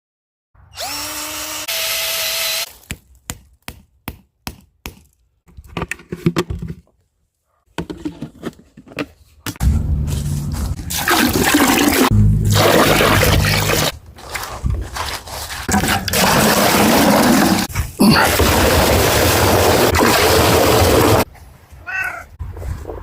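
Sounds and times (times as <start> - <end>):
power drill spinning up: 0.7 - 2.7.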